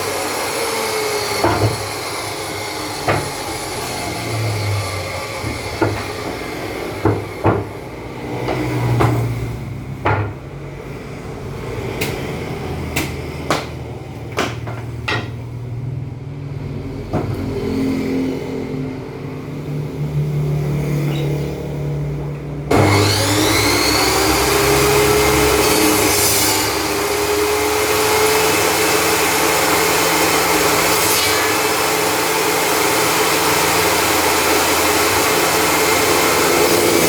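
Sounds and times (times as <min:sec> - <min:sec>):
table saw motor humming: 0:00.0 - 0:10.2, 0:22.7 - 0:37.0
wood knocking: 0:01.4 - 0:02.0, 0:03.0 - 0:03.6, 0:05.3 - 0:07.8, 0:10.0 - 0:10.4, 0:13.0 - 0:15.4.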